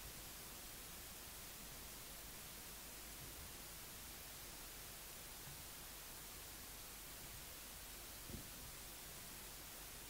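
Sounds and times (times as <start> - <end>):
faint recording hiss: 0.0 - 10.0.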